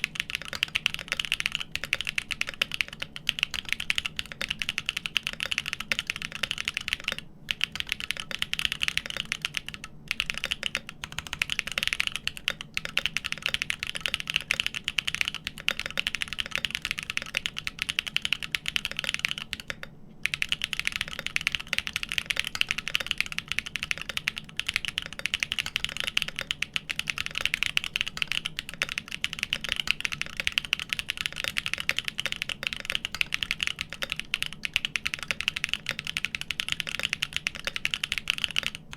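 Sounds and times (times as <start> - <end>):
fast mechanical keyboard typing: 0.0 - 38.9.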